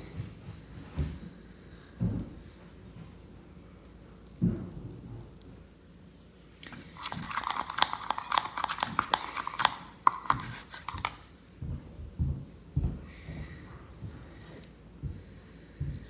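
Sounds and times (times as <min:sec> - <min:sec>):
slime clicking and squelching: 0:06.6 - 0:11.6
soft low thumps: 0:11.6 - 0:14.2.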